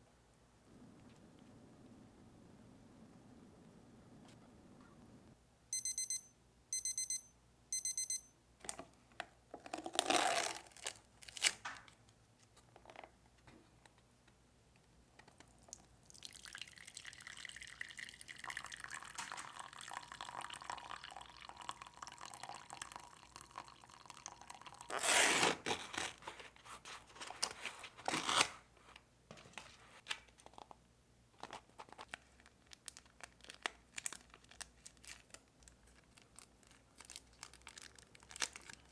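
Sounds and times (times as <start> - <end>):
short electronic beeps: 5.7 - 8.3
packaging crinkling and tearing: 9.7 - 11.9, 24.9 - 28.6, 31.4 - 38.9
water pouring: 16.0 - 24.8
plastic packaging rustling: 31.4 - 38.9.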